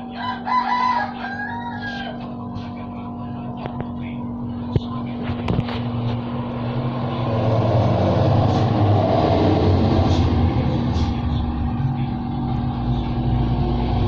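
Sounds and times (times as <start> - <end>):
steady hum: 0.0 - 14.0
motor rumbling: 1.8 - 14.0.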